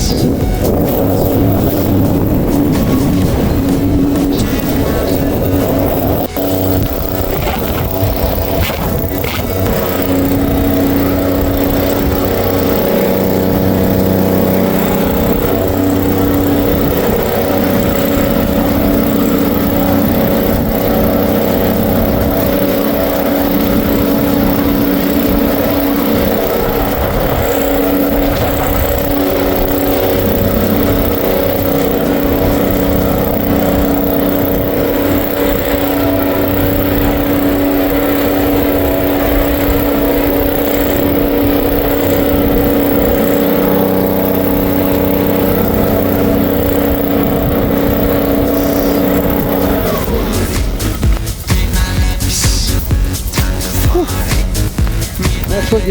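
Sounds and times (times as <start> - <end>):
lawn mower engine running: 0.0 - 55.9
wind rumbling on microphone: 0.0 - 55.9.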